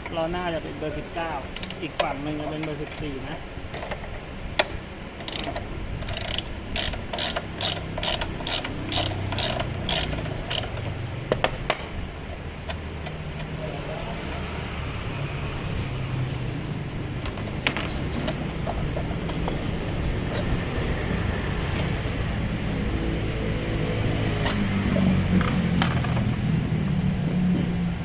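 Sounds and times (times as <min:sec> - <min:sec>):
ratchet wrench clicking: 0:01.6 - 0:02.1, 0:02.7 - 0:03.2, 0:05.2 - 0:11.0.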